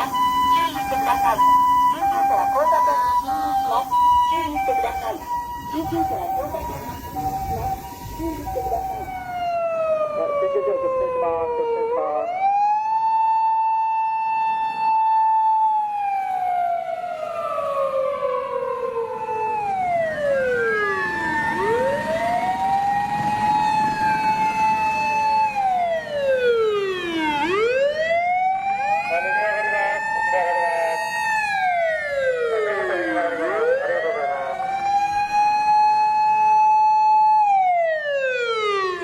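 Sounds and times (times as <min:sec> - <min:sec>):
emergency siren wailing: 0:00.0 - 0:39.0
second siren: 0:00.0 - 0:39.0.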